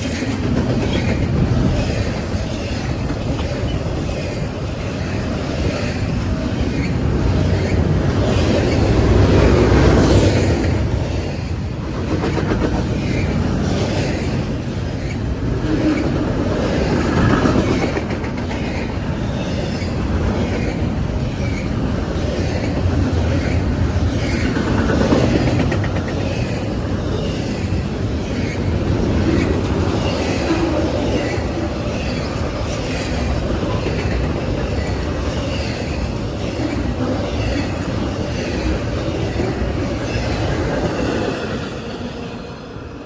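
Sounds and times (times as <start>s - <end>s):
train wheels clicking over rail joints: 22.4s - 26.6s.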